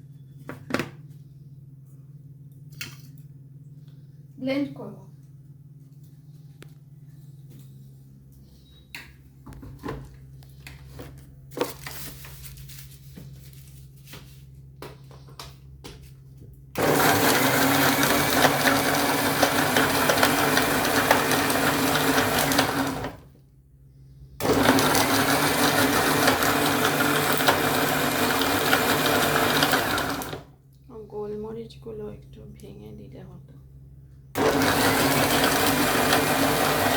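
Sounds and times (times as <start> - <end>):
electric mixer blending: 16.8 - 23.3, 24.4 - 30.5, 34.4 - 36.9.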